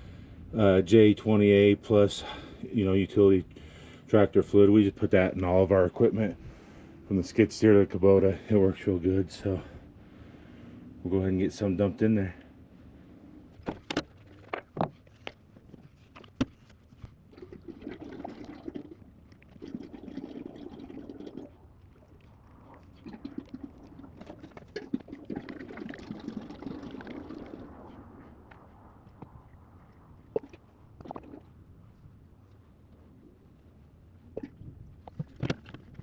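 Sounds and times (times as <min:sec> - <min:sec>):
fluid pouring from a jug: 0:17.3 - 0:28.0, 0:30.2 - 0:31.6.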